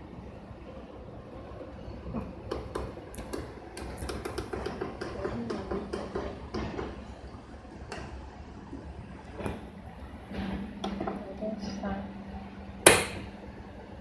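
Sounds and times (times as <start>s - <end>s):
low steady rumble: 5.2s - 14.0s.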